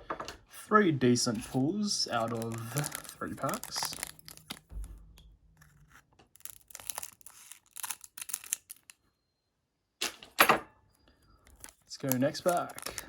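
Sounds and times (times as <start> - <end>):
cards being handled: 1.3 - 4.9, 5.6 - 9.0, 11.5 - 13.0
foil wrapper crinkling: 1.4 - 4.9, 5.6 - 9.0, 11.5 - 13.0.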